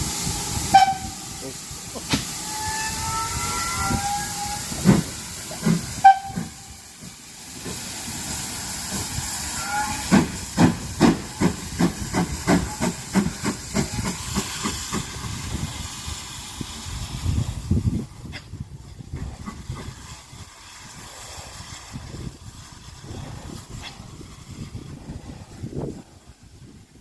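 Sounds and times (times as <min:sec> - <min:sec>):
steam locomotive chuffing: 0:00.0 - 0:26.9
steam locomotive hissing steam: 0:00.0 - 0:27.0
high squeals: 0:02.4 - 0:04.8.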